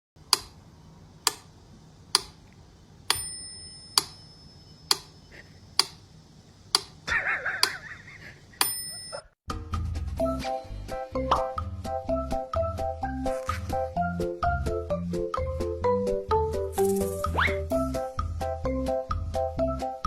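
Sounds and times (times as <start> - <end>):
clock ticking: 0.2 - 0.6, 2.2 - 2.4, 3.1 - 4.2, 4.9 - 5.2, 5.8 - 6.0, 6.7 - 7.0
bell-like ding: 3.1 - 4.9, 8.6 - 9.3.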